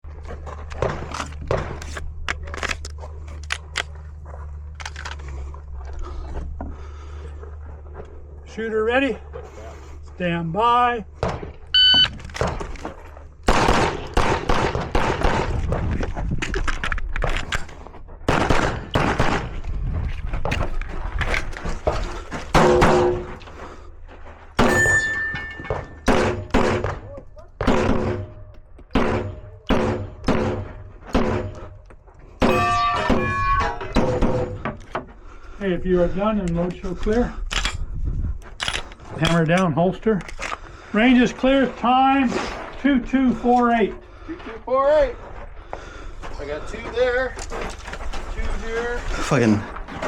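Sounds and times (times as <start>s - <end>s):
sharp clicks and crunching rustles: 0.0s - 8.5s, 11.5s - 24.6s, 36.3s - 42.9s, 45.2s - 50.0s
pistol shots: 13.4s - 15.6s, 18.3s - 19.6s, 26.0s - 31.6s
ringing steel target: 24.6s - 26.5s, 32.4s - 34.5s
low rumble: 33.6s - 39.4s.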